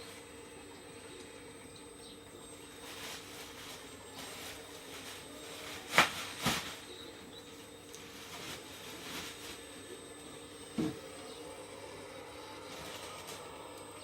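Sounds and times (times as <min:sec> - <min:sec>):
hydraulic pump humming: 0:06.8 - 0:14.0.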